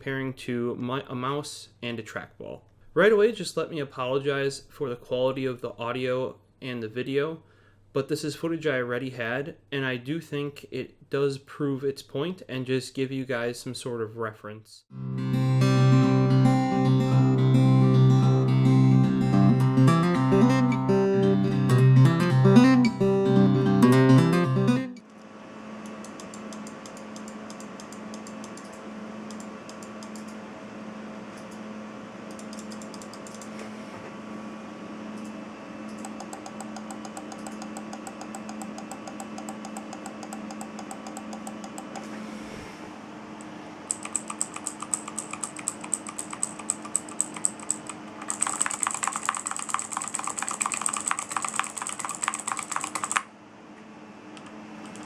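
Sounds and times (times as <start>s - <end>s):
mechanical keyboard typing: 32.3s - 33.5s, 36.0s - 42.1s, 43.9s - 53.3s.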